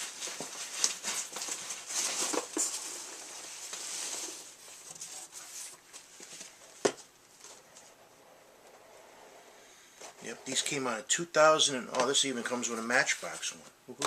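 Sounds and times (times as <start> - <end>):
packaging rustling and scraping: 0.0 - 8.0.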